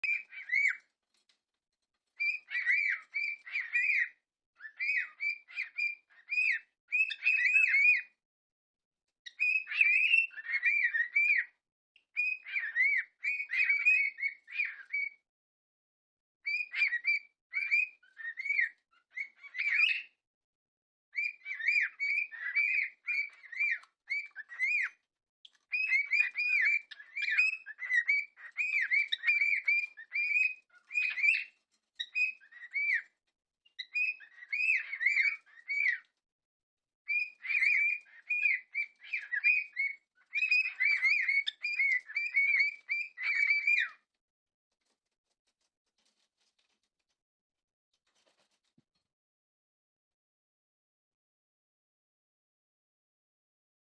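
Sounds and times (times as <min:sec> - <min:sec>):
cockatiels whistling: 0:00.0 - 0:00.8, 0:02.2 - 0:08.2, 0:09.3 - 0:11.5, 0:12.2 - 0:15.2, 0:16.5 - 0:20.2, 0:21.2 - 0:25.0, 0:25.7 - 0:36.1, 0:37.1 - 0:44.0.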